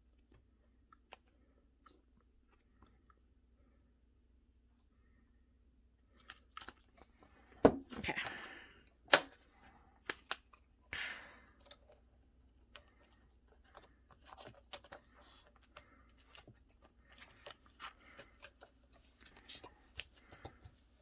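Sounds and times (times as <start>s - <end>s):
card rustling: 6.1s - 8.4s, 9.0s - 10.9s, 11.5s - 21.0s.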